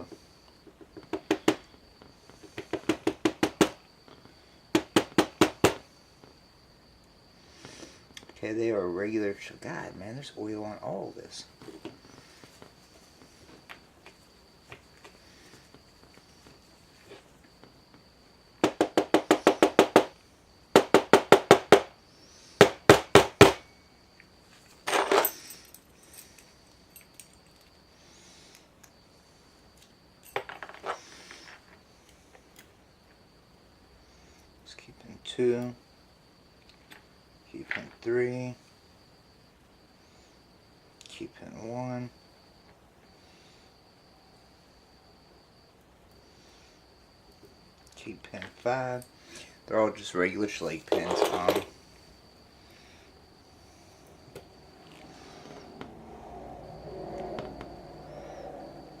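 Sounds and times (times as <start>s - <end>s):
padlock parts clattering: 24.8s - 27.7s, 29.8s - 31.8s, 50.8s - 51.8s.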